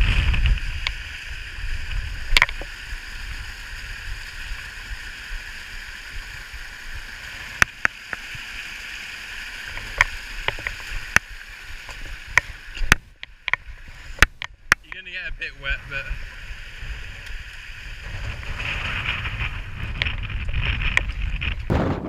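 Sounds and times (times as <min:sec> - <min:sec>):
wind buffeting microphone: 0:00.0 - 0:02.6, 0:15.6 - 0:22.0.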